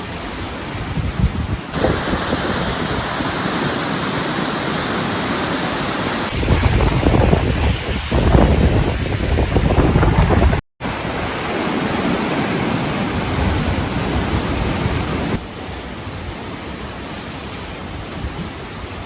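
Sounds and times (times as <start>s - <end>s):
floodwater rushing: 1.6s - 6.5s, 10.8s - 19.0s.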